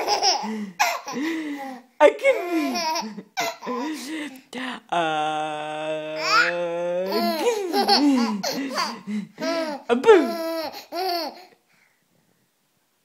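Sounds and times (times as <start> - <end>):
baby laughing: 0.0 - 4.1, 6.2 - 11.5.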